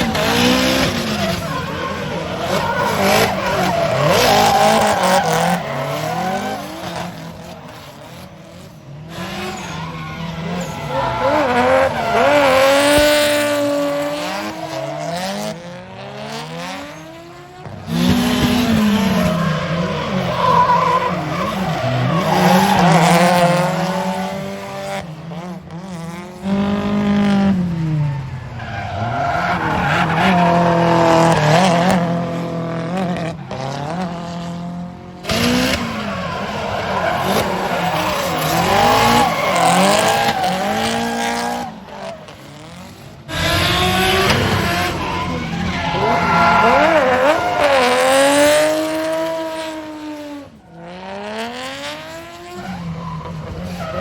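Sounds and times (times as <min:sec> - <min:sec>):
tyres squealing: 0:00.0 - 0:07.1, 0:09.4 - 0:15.1, 0:35.3 - 0:42.2, 0:43.3 - 0:48.8
car engines revving: 0:00.0 - 0:54.0.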